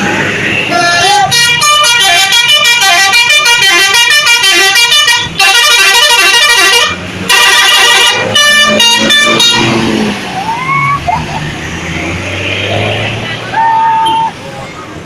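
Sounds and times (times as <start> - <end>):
bus engine running: 0.0 - 15.0
musical air horn playing tunes: 0.7 - 9.9.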